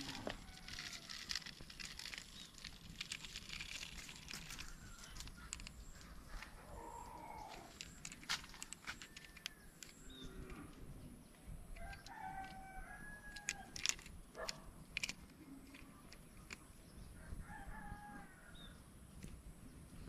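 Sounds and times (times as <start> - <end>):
rooster crowing: 0.0 - 1.2, 11.8 - 13.8, 17.2 - 18.6
sharp clicks: 7.5 - 10.8, 13.3 - 16.7.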